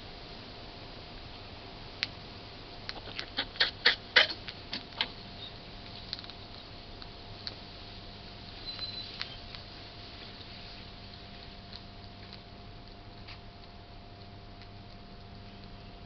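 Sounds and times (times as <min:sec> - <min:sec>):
hedgehog coughing: 0:03.0 - 0:04.4.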